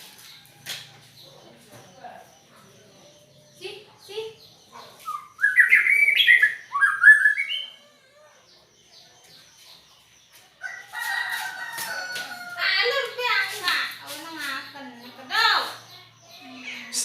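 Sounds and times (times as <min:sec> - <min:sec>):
bird singing whistled notes: 0:05.0 - 0:07.8.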